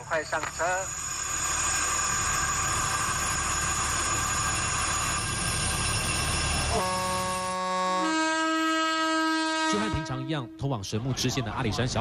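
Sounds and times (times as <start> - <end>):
train rumble with high whine: 0.0 - 12.0
train horn chord: 6.7 - 10.7.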